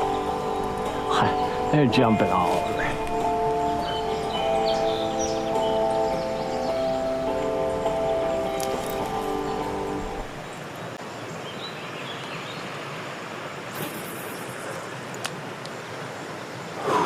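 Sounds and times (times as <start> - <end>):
music: 0.0 - 10.5
flowing creek water: 0.0 - 17.0.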